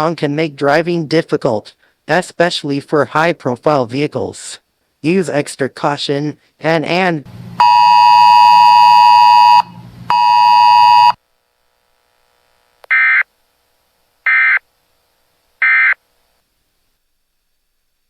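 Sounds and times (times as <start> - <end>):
short data bursts: 7.6 - 11.2, 12.9 - 13.2, 14.3 - 14.6, 15.6 - 16.0.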